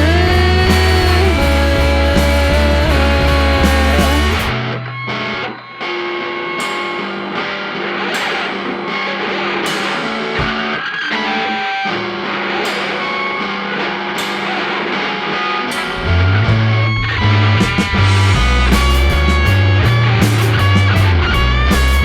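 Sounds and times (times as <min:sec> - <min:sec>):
bass: 0:00.0 - 0:05.5, 0:15.8 - 0:22.0
drums: 0:00.0 - 0:22.0
electric guitar notes ringing: 0:00.0 - 0:22.0.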